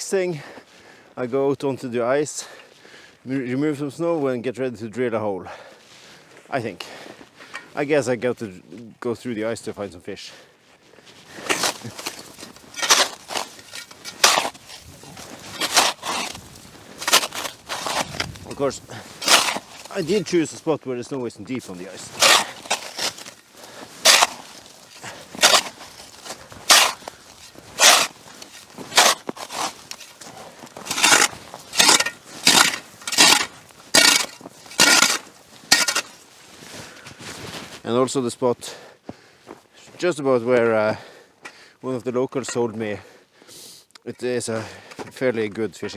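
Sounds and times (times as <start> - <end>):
snow crunching: 11.2 - 20.7, 21.5 - 38.3.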